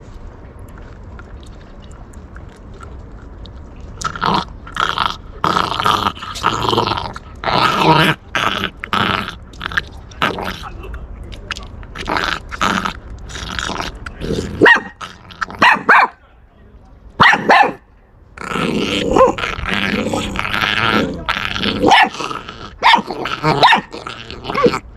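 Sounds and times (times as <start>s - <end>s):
puppy growling and snarling: 3.9s - 10.9s, 11.9s - 16.0s, 18.4s - 24.9s
puppy barking: 14.6s - 15.0s, 15.6s - 16.2s, 17.2s - 17.8s, 21.8s - 22.2s, 22.8s - 23.9s.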